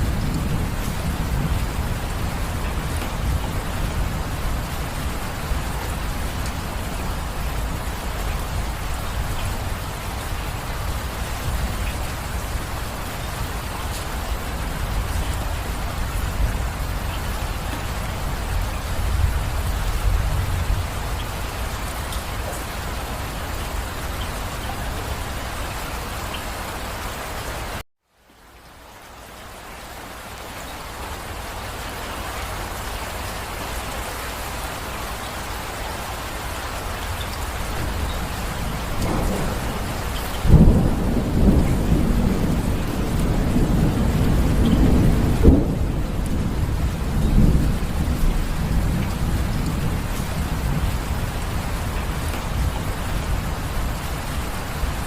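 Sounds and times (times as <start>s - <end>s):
low thunder rumble: 0.0s - 22.3s, 37.4s - 55.0s
heavy rain falling: 0.0s - 55.0s.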